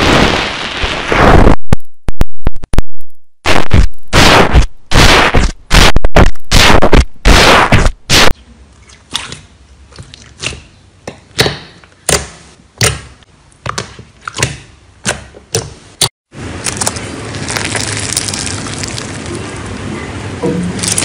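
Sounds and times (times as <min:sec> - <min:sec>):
slime crackling and popping: 0:16.6 - 0:19.4, 0:20.8 - 0:21.0.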